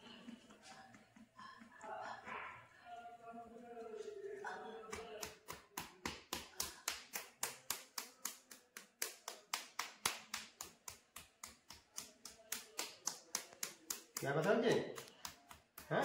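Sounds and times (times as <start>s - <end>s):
hands slapping a body: 4.9s - 16.0s.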